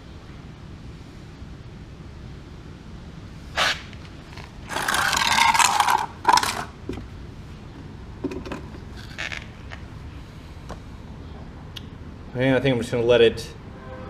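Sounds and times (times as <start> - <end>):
objects scraping: 3.6 - 6.8.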